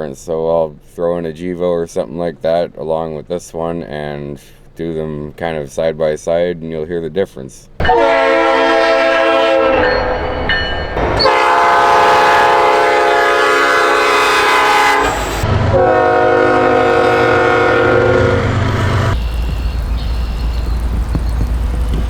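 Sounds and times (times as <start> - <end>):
locomotive air horn blasts: 7.8 - 10.1, 11.0 - 20.7.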